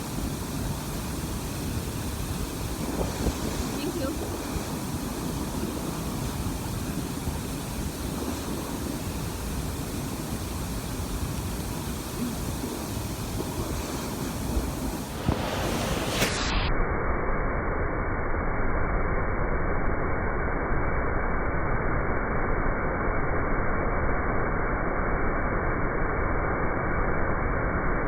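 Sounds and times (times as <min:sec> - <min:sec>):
wind buffeting microphone: 0:00.0 - 0:16.6
waterfall rushing: 0:00.0 - 0:16.7.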